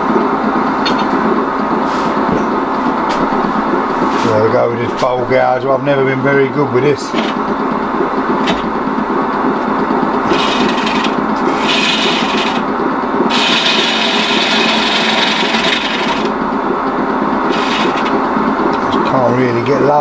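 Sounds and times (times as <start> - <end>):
wood lathe running: 2.6 - 20.0
gouge scraping spinning wood: 6.6 - 9.1, 9.7 - 19.1.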